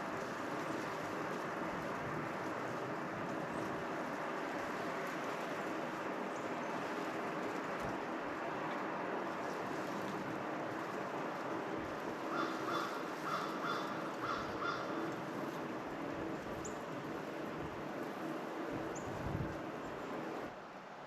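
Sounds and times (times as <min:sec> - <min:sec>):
outdoor hiss: 0:00.0 - 0:21.0
crow cawing: 0:12.3 - 0:15.1.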